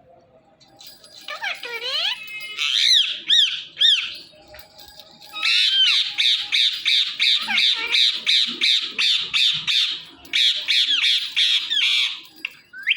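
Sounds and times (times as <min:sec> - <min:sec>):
parakeet squawking harsh calls: 0:01.4 - 0:04.2, 0:05.4 - 0:12.2.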